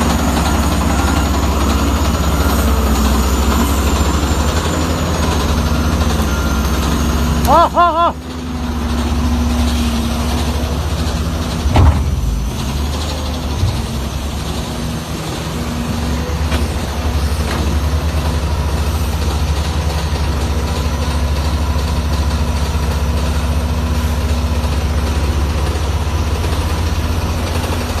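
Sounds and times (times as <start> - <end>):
diesel engine droning: 0.0 - 28.0
loud sharp knocks: 11.5 - 14.4.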